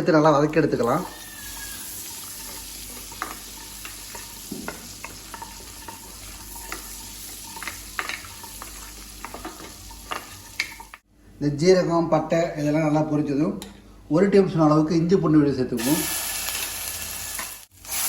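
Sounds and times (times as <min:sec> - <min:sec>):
spices sizzling in butter: 0:00.4 - 0:11.0, 0:15.8 - 0:18.0.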